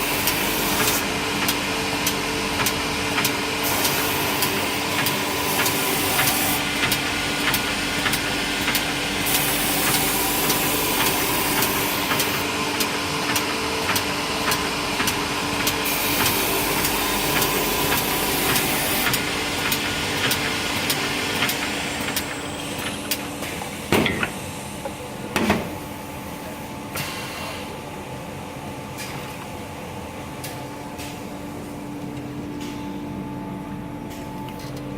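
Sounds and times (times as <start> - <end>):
cnc machine running: 0.0 - 25.3.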